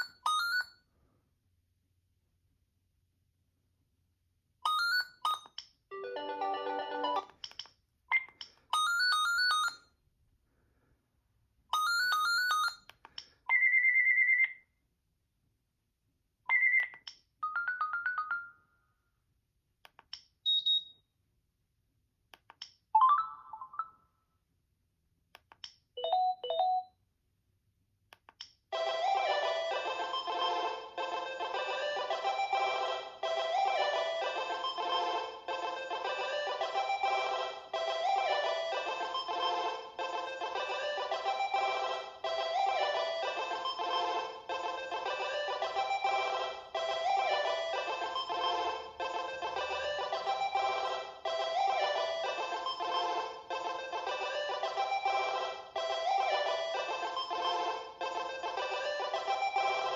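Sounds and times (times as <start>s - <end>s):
electronic phone ringtones: 8.1s - 9.9s, 13.5s - 14.7s, 26.0s - 26.9s.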